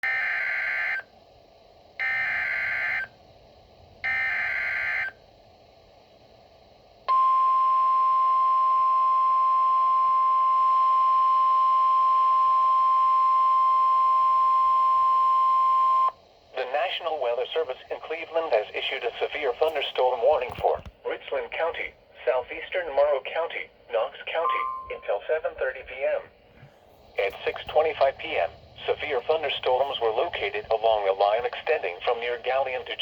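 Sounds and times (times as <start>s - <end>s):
steady warning alarm tone: 0.0s - 1.1s, 2.0s - 3.2s, 4.0s - 5.2s, 7.1s - 16.2s.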